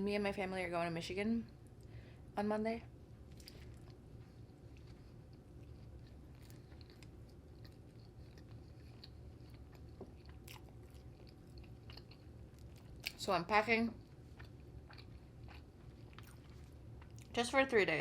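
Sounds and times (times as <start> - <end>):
low steady hum: 0.0 - 18.0
chewing and biting food: 3.2 - 17.4.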